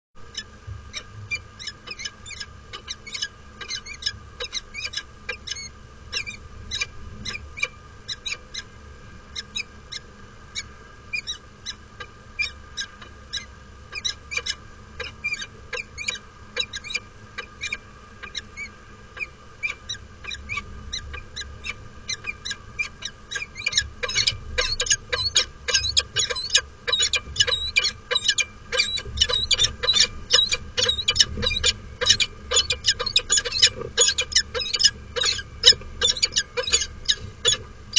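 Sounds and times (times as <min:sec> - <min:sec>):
falcons calling: 0:12.4 - 0:37.6.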